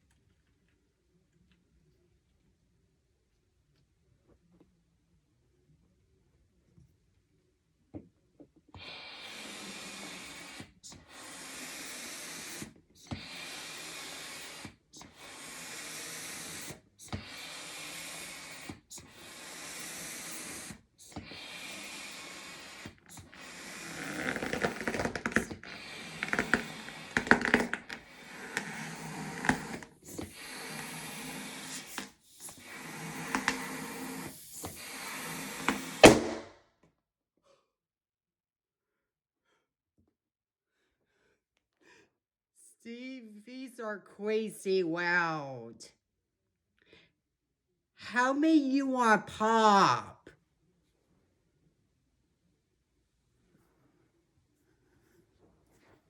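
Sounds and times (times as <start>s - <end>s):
balloon pump hissing strokes: 8.8s - 36.5s
balloon rubber squeaking: 8.8s - 36.5s
balloon bursting pop: 34.6s - 36.6s.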